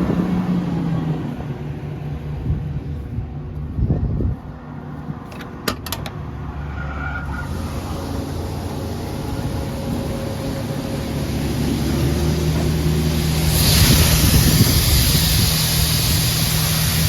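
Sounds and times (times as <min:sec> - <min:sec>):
combine harvester engine hum: 0:00.0 - 0:17.0
rushing hiss: 0:07.4 - 0:17.0.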